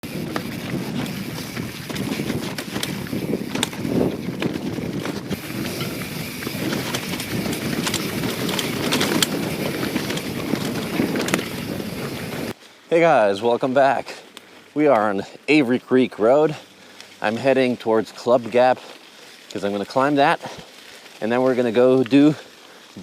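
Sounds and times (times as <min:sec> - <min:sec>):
wind on microphone: 0:00.0 - 0:12.5
bike knocking and rattling: 0:00.0 - 0:12.6
tyres rumbling on gravel: 0:00.0 - 0:23.0.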